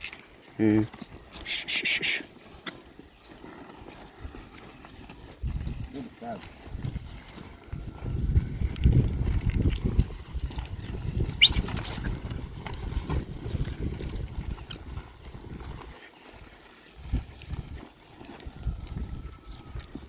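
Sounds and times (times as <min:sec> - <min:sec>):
hooves scuffing: 0:00.0 - 0:20.0
plough working soil: 0:00.0 - 0:20.0
brief rising squeak: 0:10.7 - 0:11.7.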